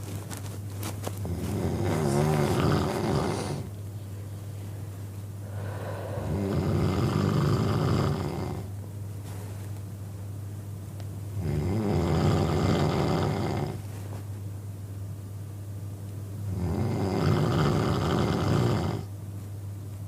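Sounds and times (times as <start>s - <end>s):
man snoring loudly: 1.3s - 3.7s, 5.6s - 8.7s, 11.4s - 13.8s, 16.5s - 19.1s.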